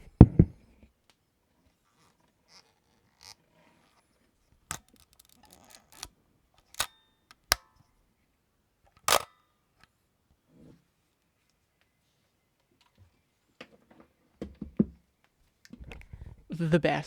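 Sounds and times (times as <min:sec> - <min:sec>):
camera shutter clicking: 0:04.7 - 0:07.7, 0:09.0 - 0:09.3.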